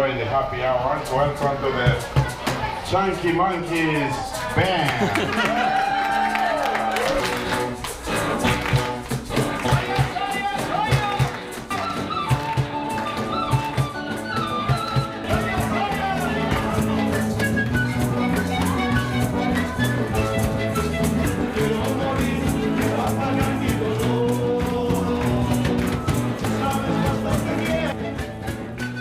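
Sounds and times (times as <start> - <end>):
live band playing upbeat music: 1.1 - 29.0.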